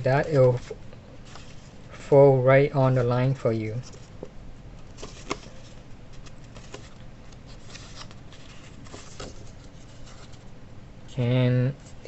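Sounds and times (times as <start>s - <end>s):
paper crinkling: 0.2s - 1.9s, 4.8s - 10.5s.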